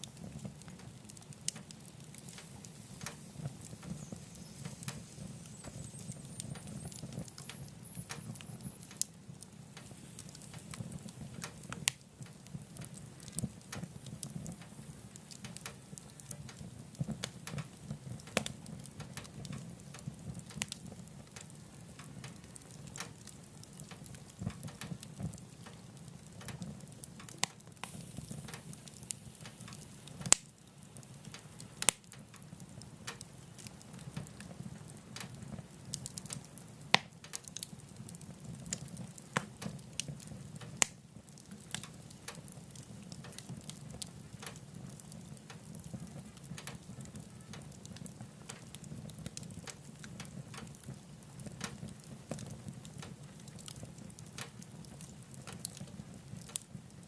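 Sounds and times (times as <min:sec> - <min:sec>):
fire rumbling in a stove: 0:00.0 - 0:57.0
logs crackling and popping: 0:00.0 - 0:57.0.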